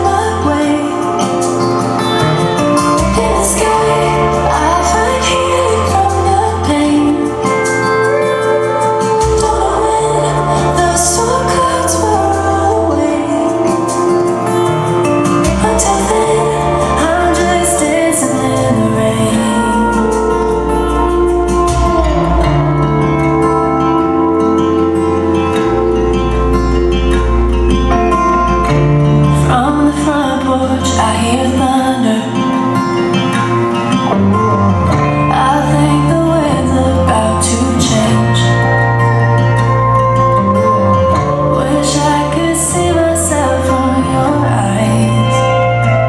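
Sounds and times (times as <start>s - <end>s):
person singing: 0.0s - 25.9s, 27.9s - 34.2s, 34.8s - 46.0s
bass line: 0.0s - 32.4s, 33.0s - 46.0s
sustained instrumental backing: 0.0s - 46.0s.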